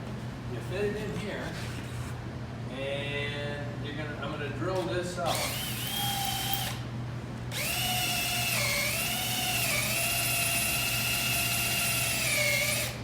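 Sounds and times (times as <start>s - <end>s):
power drill whining: 5.3s - 6.8s, 7.5s - 13.0s.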